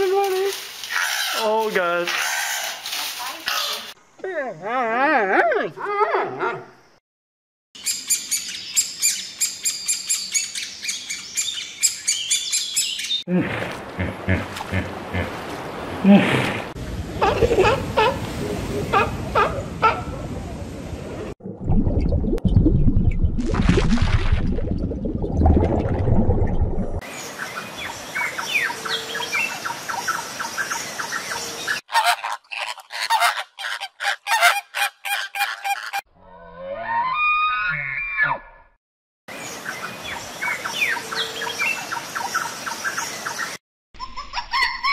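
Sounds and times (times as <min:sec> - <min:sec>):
birds chirping rapidly: 0:07.8 - 0:13.3.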